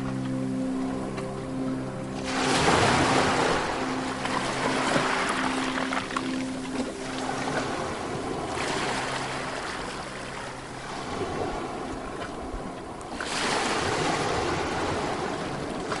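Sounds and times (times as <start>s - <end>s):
surf wash: 0.0s - 16.0s
sea waves breaking on beach: 2.2s - 16.0s.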